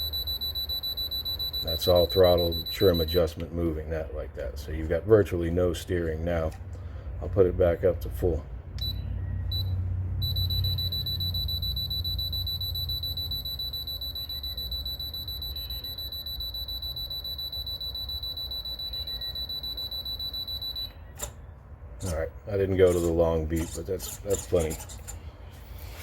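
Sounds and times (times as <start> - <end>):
high-pitched transmitter beeping: 0.0 - 3.2, 8.8 - 20.9.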